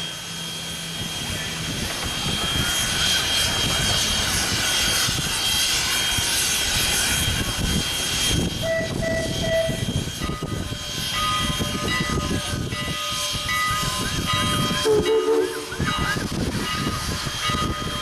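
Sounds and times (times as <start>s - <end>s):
steam hissing: 0.0s - 18.0s
wind on microphone: 1.0s - 18.0s
steam locomotive whistle: 7.1s - 11.8s, 13.1s - 16.3s.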